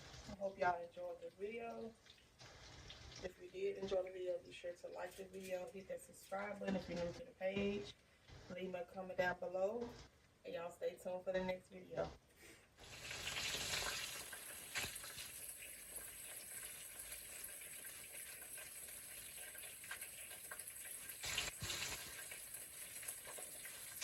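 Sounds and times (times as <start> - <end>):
food sizzling in oil: 1.9 - 3.3, 12.8 - 24.0
oil popping: 12.8 - 24.0.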